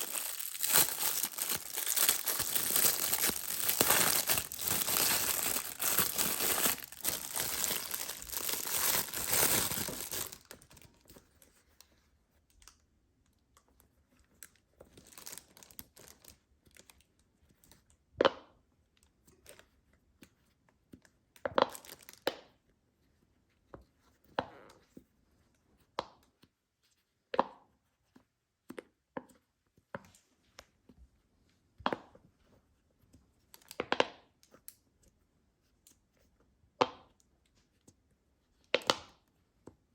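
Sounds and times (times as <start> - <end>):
plastic packaging tearing and crinkling: 0.0 - 11.1, 15.0 - 16.3, 21.7 - 22.2.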